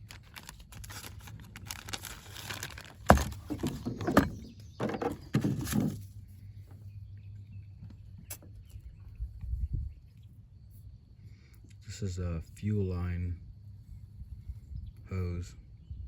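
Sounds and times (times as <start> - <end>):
packaging rustling: 0.0 - 4.4.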